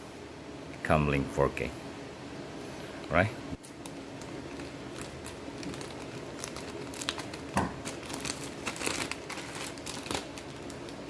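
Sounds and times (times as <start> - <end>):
packaging crinkling: 3.6 - 11.0.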